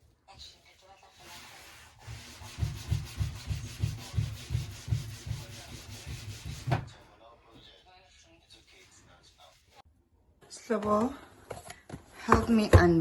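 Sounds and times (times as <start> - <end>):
rhythmic scrubbing strokes: 2.0 - 6.8.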